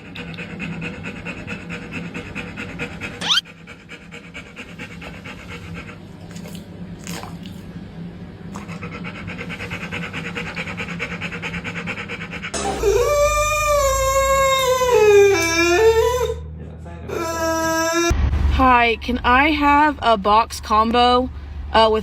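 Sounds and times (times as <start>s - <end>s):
dog panting: 0.0s - 6.2s, 8.5s - 12.6s
short rising squeak: 3.2s - 3.4s.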